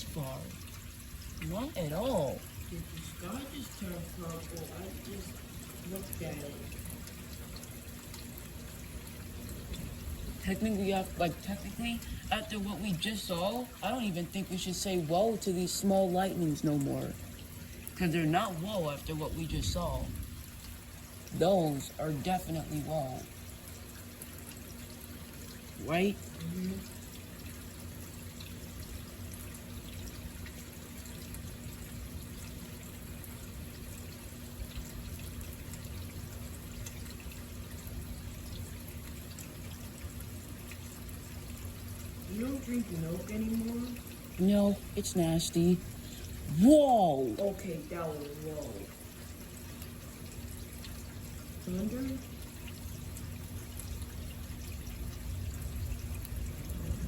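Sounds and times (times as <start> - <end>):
faint low hum: 0.0 - 57.0
rain falling: 0.0 - 57.0
water running and dripping: 0.0 - 57.0
low rumble of thunder: 55.0 - 57.0.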